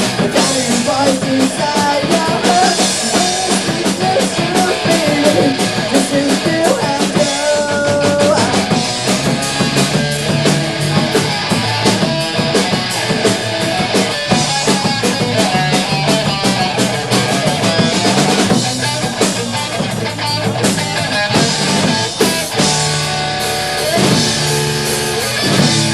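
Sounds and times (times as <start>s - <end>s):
electric guitar: 0.0s - 25.9s
fast drum kit beat: 0.0s - 25.9s.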